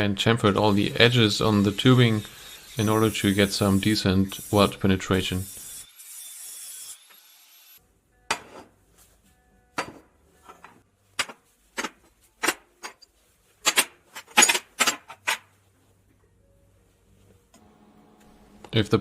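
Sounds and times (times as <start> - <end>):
steel parts clinking and knocking: 9.8 - 15.5.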